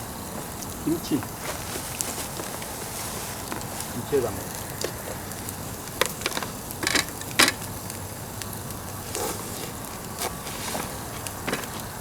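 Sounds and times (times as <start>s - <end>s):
fire pops: 0.0s - 12.0s
wood fire crackling: 0.0s - 12.0s.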